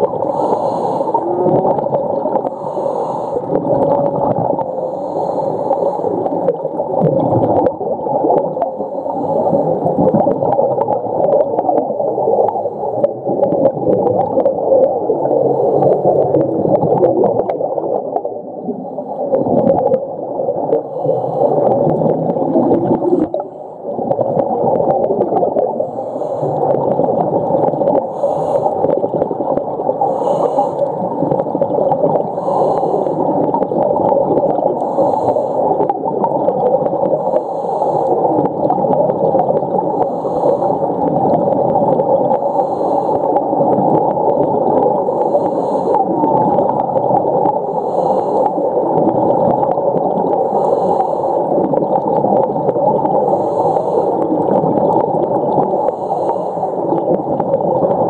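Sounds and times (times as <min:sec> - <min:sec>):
whale song underwater: 0:00.0 - 0:05.1.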